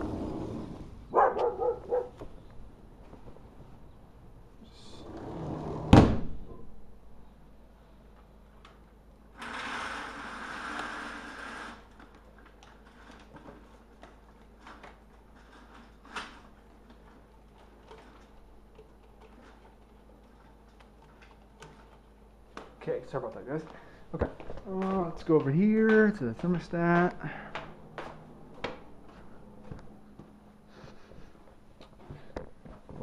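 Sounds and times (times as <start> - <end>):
door banging shut: 5.5 - 6.6.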